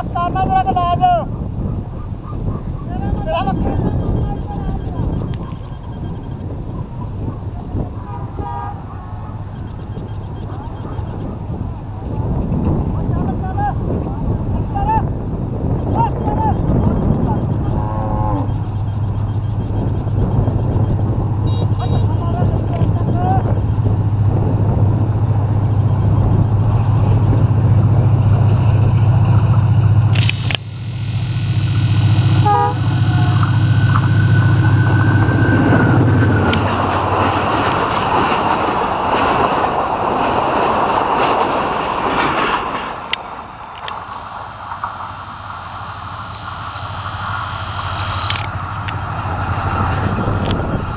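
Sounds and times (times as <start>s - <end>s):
thin high whine: 0.0s - 39.8s, 43.2s - 50.9s
locomotive engine drone: 0.0s - 50.9s
train wheels rolling: 0.0s - 50.9s
horn-like tone: 3.0s - 12.4s, 15.6s - 38.3s, 45.0s - 50.9s.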